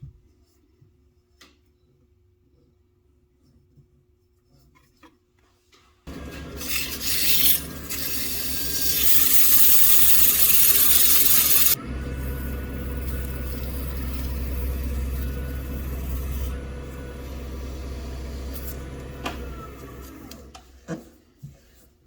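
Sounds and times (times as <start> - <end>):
tool scraping spinning wood: 6.1 - 20.6
wood lathe motor humming: 6.1 - 20.6
loud rushing hiss: 6.6 - 16.5.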